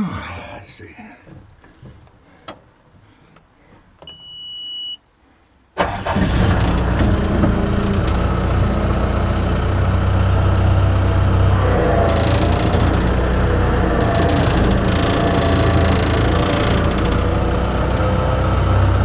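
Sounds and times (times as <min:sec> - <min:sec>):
electronic warning beep: 0:04.1 - 0:05.0
engine idling: 0:05.8 - 0:19.0.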